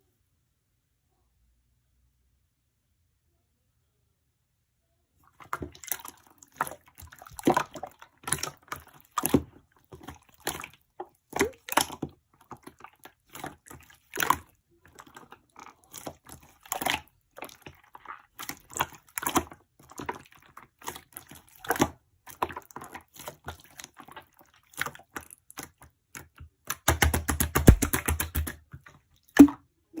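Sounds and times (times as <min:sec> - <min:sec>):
slime squished by hand: 0:05.4 - 0:28.7
wet clicks and pops: 0:25.6 - 0:28.7.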